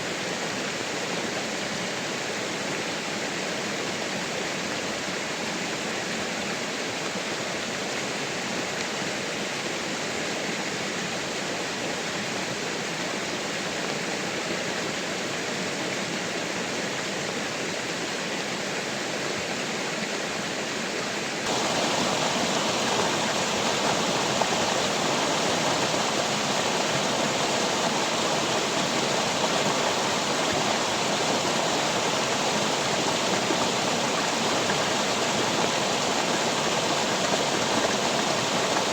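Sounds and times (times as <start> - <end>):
rushing water: 0.0 - 38.9.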